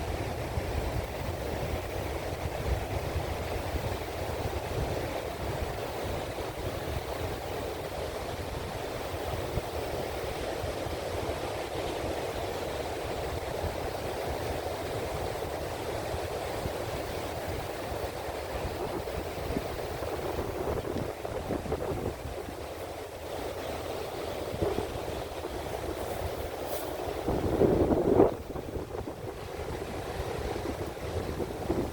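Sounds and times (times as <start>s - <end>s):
wind: 0.0s - 31.9s
ocean surf rushing: 16.1s - 31.9s.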